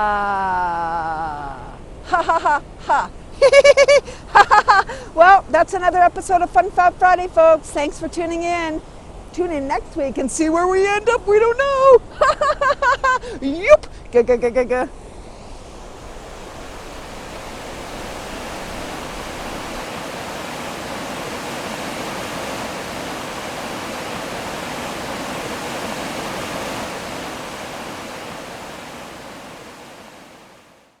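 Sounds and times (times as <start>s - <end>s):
waterfall rushing: 15.6s - 31.0s.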